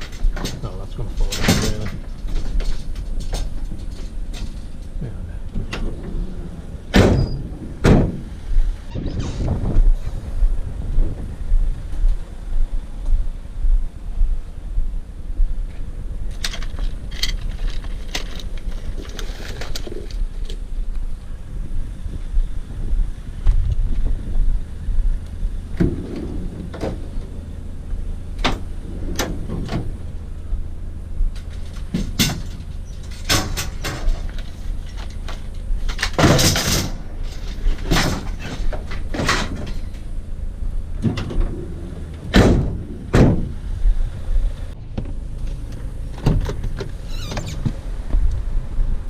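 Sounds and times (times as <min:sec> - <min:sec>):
clunks and rattles: 0:00.0 - 0:10.2, 0:15.7 - 0:20.7, 0:25.7 - 0:48.4
vehicle engine running: 0:09.7 - 0:49.0.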